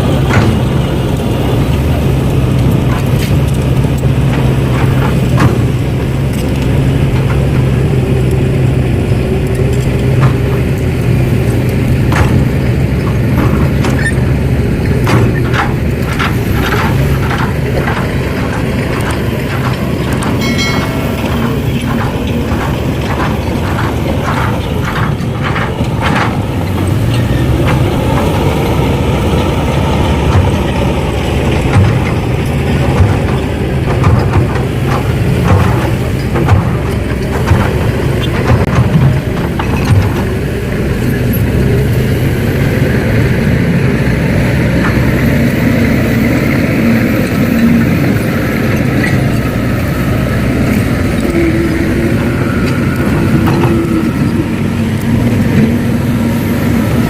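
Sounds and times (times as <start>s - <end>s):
model excavator humming: 0.0s - 57.0s.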